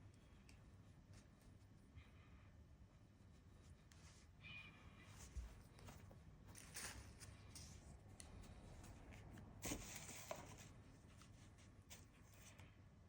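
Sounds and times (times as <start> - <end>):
paper rustling: 5.2 - 12.6.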